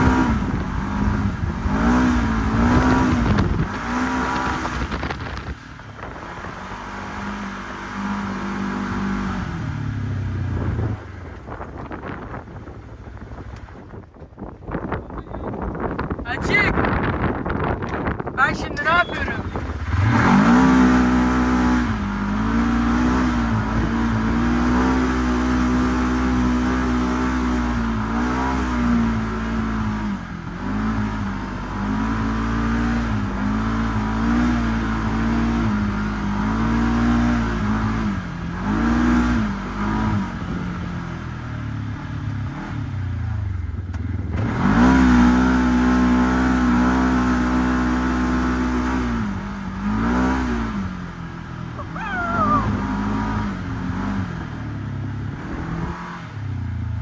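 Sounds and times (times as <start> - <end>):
utility vehicle engine revving: 0.0 - 13.9, 18.8 - 57.0.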